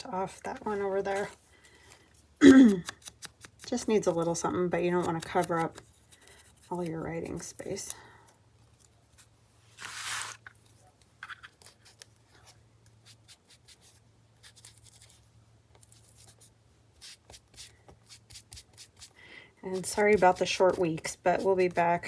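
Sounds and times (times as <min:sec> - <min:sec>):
paper rustling: 0:08.6 - 0:12.6.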